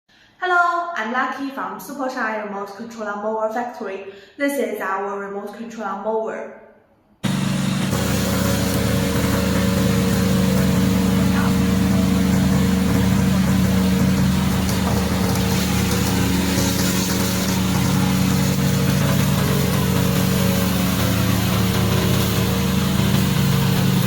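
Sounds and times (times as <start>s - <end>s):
mower engine running: 7.2s - 24.0s.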